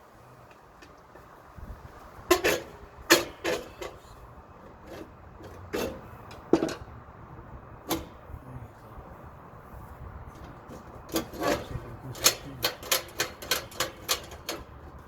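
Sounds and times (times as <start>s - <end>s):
lock clicks and knocks on metal panel: 7.8s - 8.2s, 11.1s - 14.7s.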